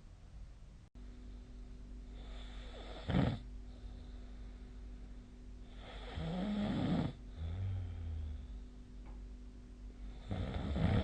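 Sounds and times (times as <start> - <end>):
person snoring: 2.1 - 3.5, 5.6 - 8.6, 10.0 - 11.0.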